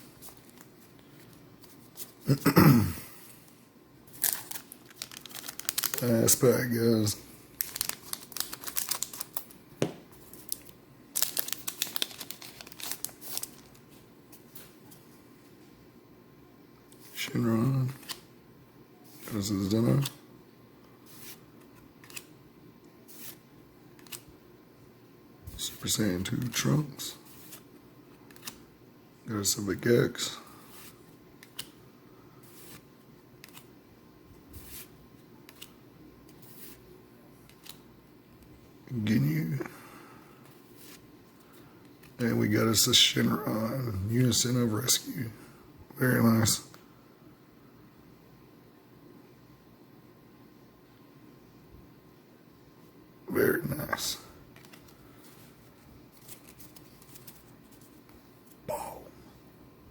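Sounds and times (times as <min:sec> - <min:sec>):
foil pack crinkling: 0:04.1 - 0:06.8, 0:07.5 - 0:09.6, 0:10.2 - 0:13.8.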